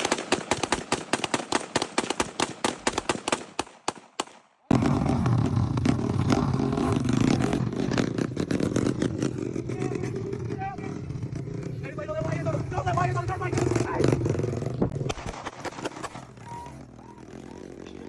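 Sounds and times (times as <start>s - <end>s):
sharp pops and cracks: 0.0s - 4.5s, 14.8s - 16.4s.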